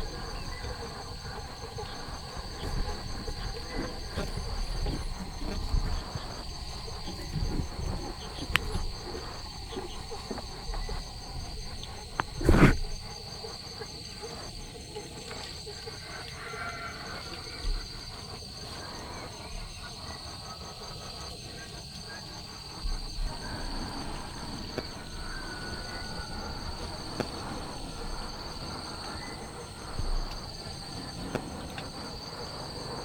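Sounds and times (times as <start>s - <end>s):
light rustling: 0.0s - 13.1s
insects chirping: 0.0s - 33.0s.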